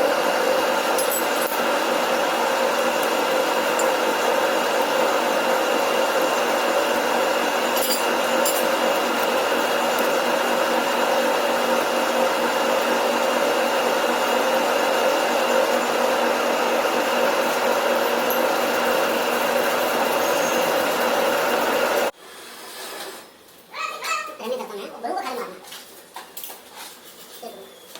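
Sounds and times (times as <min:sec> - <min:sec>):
metal lathe droning: 0:00.0 - 0:22.1.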